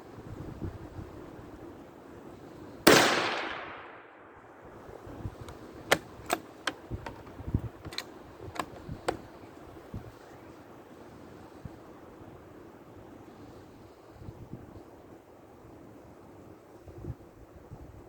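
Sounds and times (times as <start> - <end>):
wind noise: 0.0 - 18.0
rifle shot: 2.9 - 4.4.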